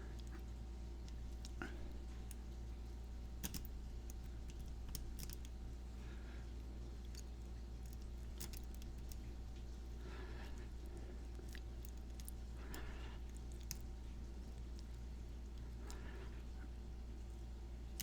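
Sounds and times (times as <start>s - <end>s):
steady low hum: 0.0s - 18.0s
lock pick metallic clicks: 3.4s - 3.7s.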